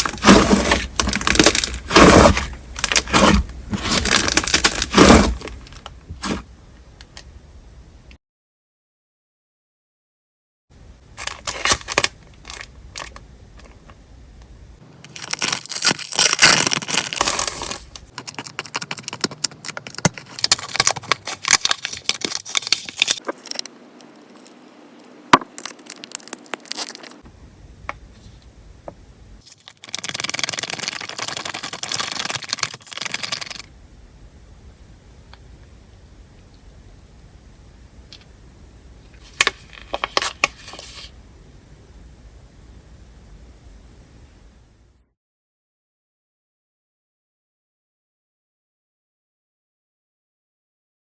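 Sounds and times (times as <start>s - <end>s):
slime crackling and popping: 15.1s - 23.6s.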